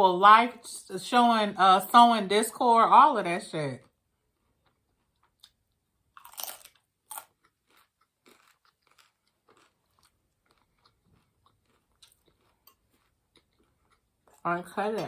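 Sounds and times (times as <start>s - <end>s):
person chewing crunchy food: 3.9s - 14.5s.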